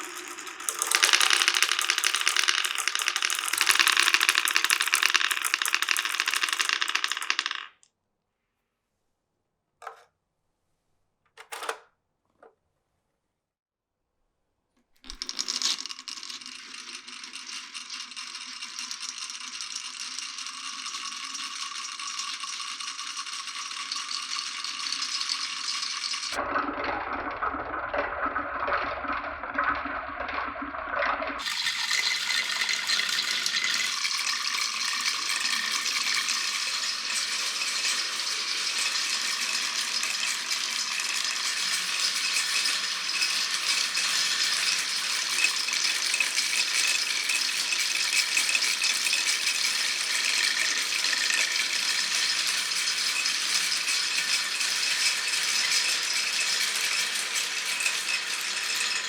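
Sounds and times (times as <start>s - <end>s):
marbles rattling on wooden run: 0.0s - 7.8s, 15.0s - 26.4s, 31.4s - 59.0s.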